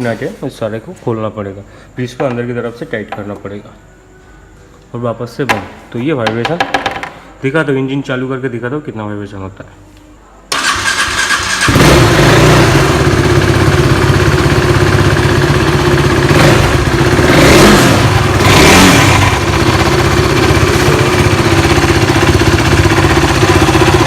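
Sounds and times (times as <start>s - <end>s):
motorcycle engine revving: 10.6s - 24.0s.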